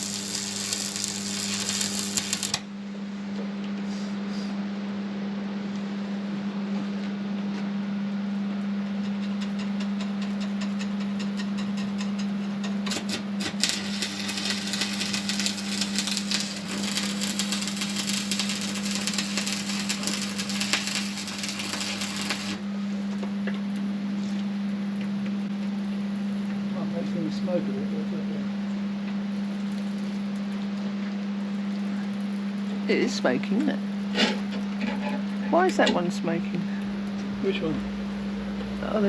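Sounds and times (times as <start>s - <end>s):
welding arc crackling and sizzling: 0.0s - 2.7s, 9.4s - 22.7s, 29.2s - 39.0s
steady low hum: 0.0s - 39.0s.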